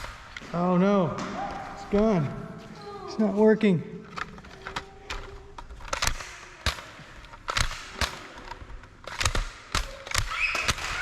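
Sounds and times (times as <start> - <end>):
toy blaster snaps and clicks: 4.6 - 11.0.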